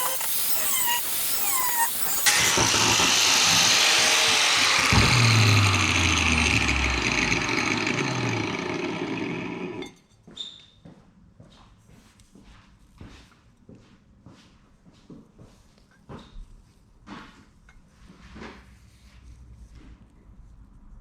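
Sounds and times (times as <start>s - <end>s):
power tool running rough: 0.0s - 9.9s.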